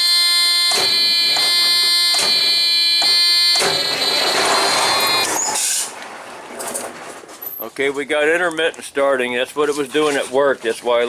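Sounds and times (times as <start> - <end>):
dashboard warning buzzer: 0.0 - 5.6.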